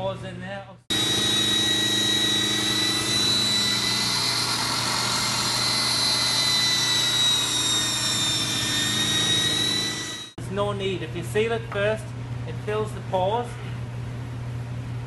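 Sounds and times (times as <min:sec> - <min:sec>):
power tool motor whining: 0:00.9 - 0:10.4.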